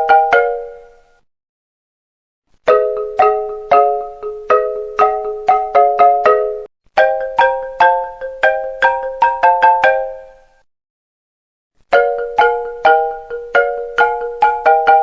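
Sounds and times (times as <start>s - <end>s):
marimba-like ringtone melody: 0.0s - 1.1s, 2.6s - 10.6s, 11.9s - 15.0s.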